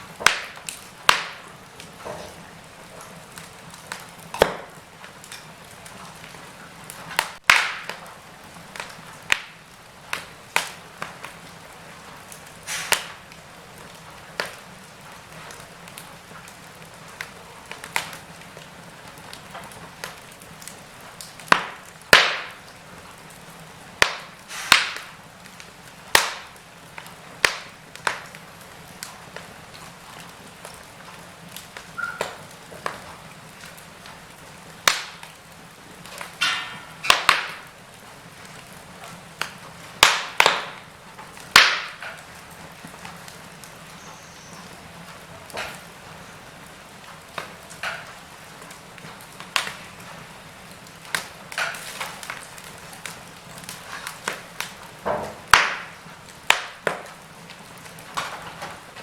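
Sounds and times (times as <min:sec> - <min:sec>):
wood fire crackling and popping: 0:00.0 - 0:59.0.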